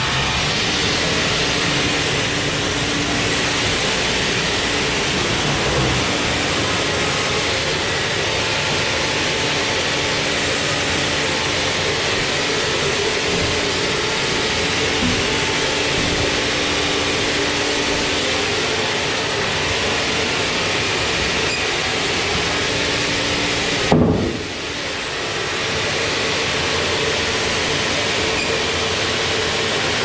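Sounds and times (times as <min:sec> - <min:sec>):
sawmill machinery running: 0:00.0 - 0:30.0.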